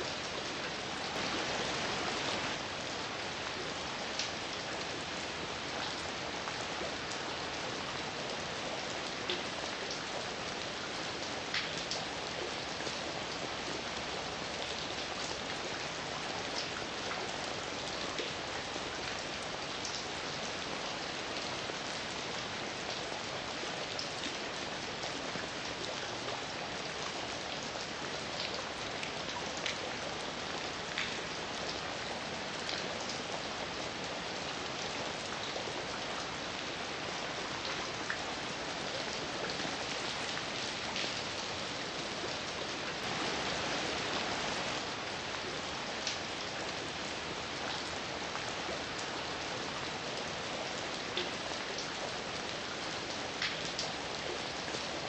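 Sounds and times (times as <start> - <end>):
heavy rain falling: 0.0 - 54.8
raindrops ticking on surface: 3.4 - 15.8, 22.8 - 49.1, 53.1 - 54.8.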